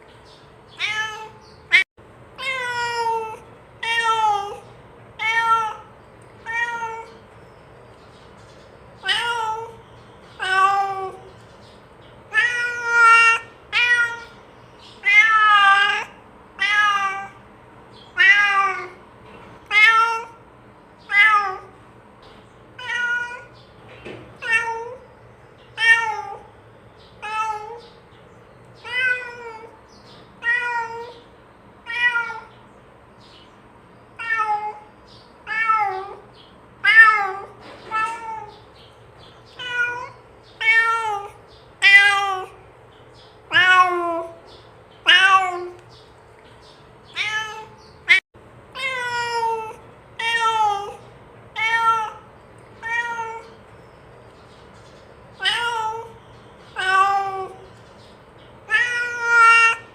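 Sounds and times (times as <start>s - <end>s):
cat meowing: 0.7s - 1.8s, 2.4s - 7.2s, 9.0s - 9.8s, 10.4s - 11.3s, 12.3s - 14.4s, 15.0s - 17.4s, 18.1s - 19.0s, 19.6s - 20.4s, 21.0s - 21.8s, 22.8s - 23.6s, 24.4s - 25.0s, 25.8s - 26.5s, 27.2s - 28.0s, 28.8s - 29.8s, 30.4s - 31.2s, 31.8s - 32.5s, 34.2s - 38.7s, 39.5s - 42.6s, 43.5s - 44.4s, 45.0s - 45.8s, 47.1s - 53.6s, 55.4s - 57.7s, 58.6s - 59.9s.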